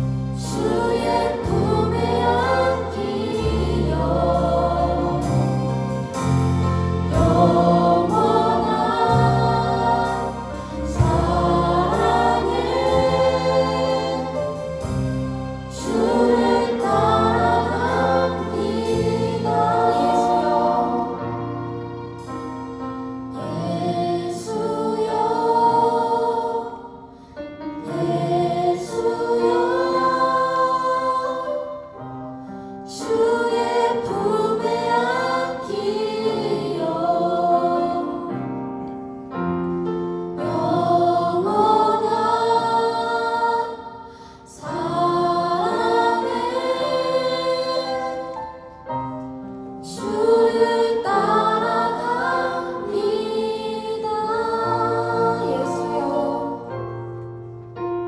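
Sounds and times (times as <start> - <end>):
group singing a worship song: 0.0 - 22.2, 23.3 - 38.9, 40.3 - 57.6
held accompaniment notes: 0.0 - 32.4.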